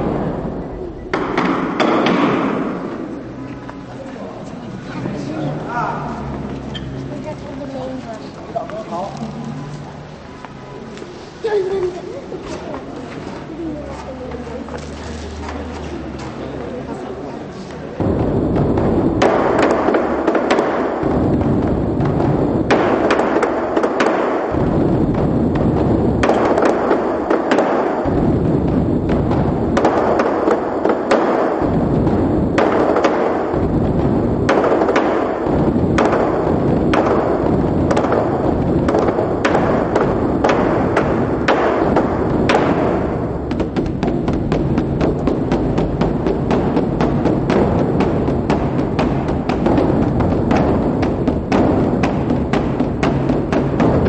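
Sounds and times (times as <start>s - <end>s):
large drums beaten: 0.0s - 3.9s, 18.0s - 54.0s.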